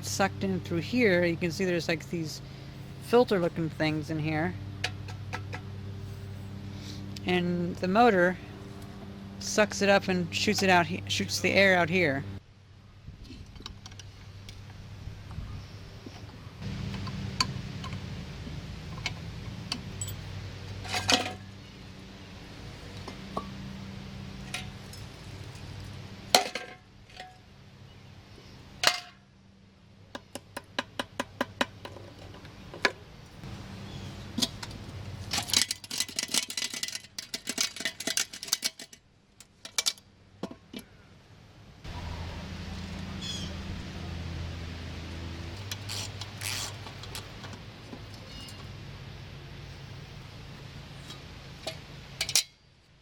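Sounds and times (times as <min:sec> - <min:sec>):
steady low hum: 0:00.0 - 0:30.1
metal parts clinking and knocking: 0:18.9 - 0:20.2, 0:20.8 - 0:21.5, 0:34.4 - 0:40.6, 0:51.6 - 0:52.6.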